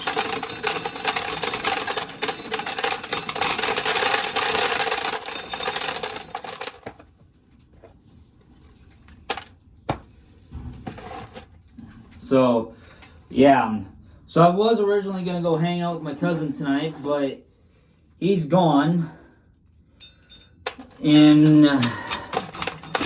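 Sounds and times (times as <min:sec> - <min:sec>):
corn sheller rattling: 0:00.0 - 0:07.1, 0:20.7 - 0:23.0.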